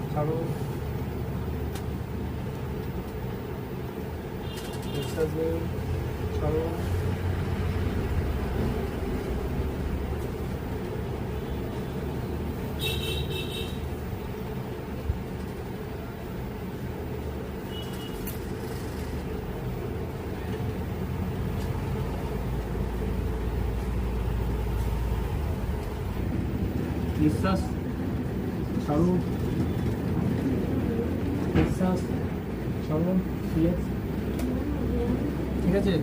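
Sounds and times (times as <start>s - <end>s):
low background rumble: 19.0s - 36.0s.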